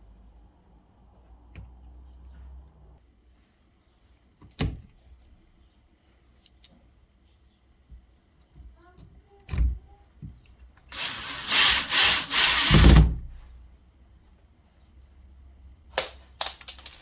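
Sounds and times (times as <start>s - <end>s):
power drill whining: 10.9s - 13.1s.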